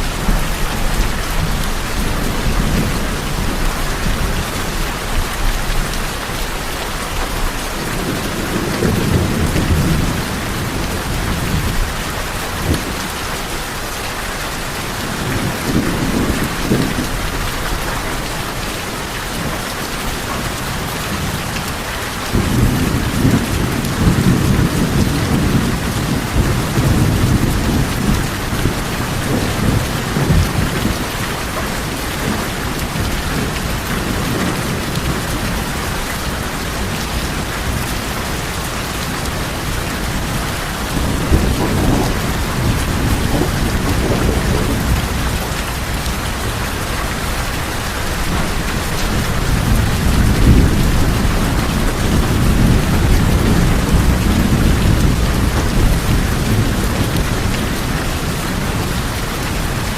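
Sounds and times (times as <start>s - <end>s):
heavy rain on tin roofs: 0.0s - 59.9s
rolling thunder: 39.2s - 59.9s.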